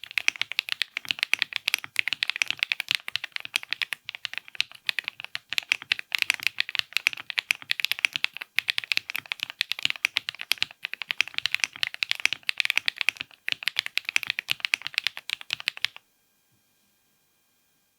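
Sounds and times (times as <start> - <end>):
fast typing on mechanical keyboard: 0.0 - 16.0.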